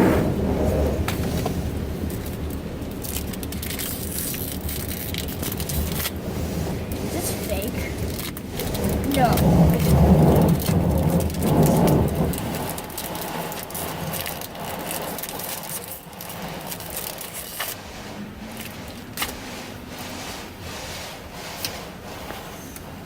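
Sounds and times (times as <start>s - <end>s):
cards and foil wrappers crinkling: 2.0s - 6.2s, 7.2s - 17.8s.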